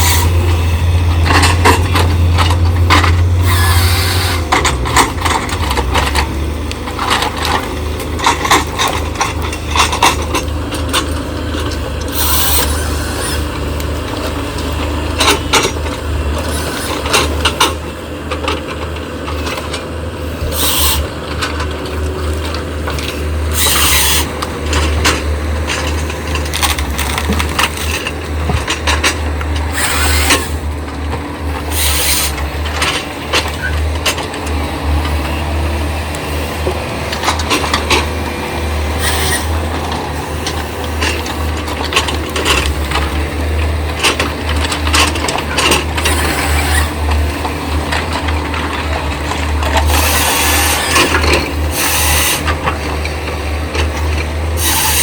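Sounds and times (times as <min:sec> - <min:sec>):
excavator diesel engine: 0:00.0 - 0:55.0
timber knocking and cracking: 0:22.9 - 0:30.4.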